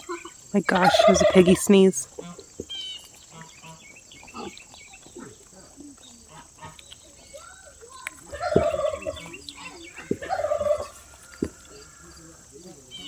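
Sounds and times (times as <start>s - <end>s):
rapidly pulsing animal calls: 0.0s - 5.4s, 8.2s - 13.0s
sharp low thuds: 8.4s - 9.4s.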